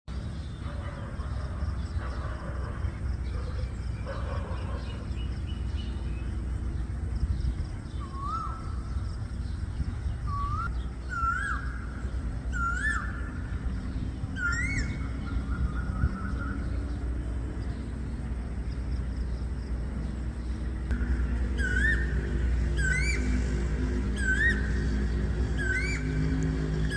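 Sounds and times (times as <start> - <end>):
steady low hum: 0.1 - 26.9
bird giving rising calls: 10.3 - 16.6, 21.2 - 26.9.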